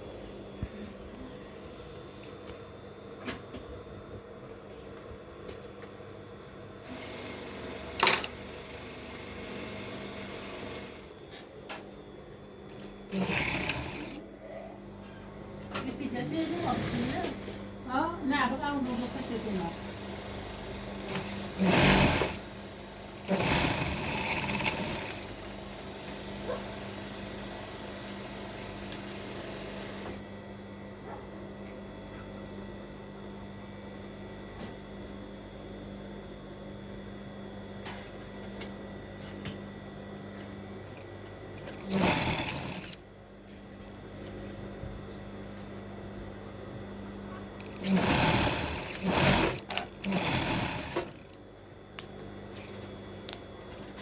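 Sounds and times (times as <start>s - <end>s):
sewing machine running: 6.8s - 11.1s, 13.1s - 14.2s, 18.8s - 30.2s, 41.6s - 43.0s, 47.6s - 51.4s.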